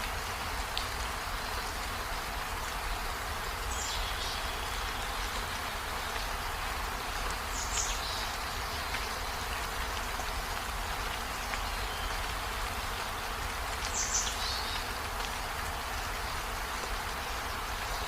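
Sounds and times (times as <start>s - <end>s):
rain on leaves and window: 0.0s - 18.0s.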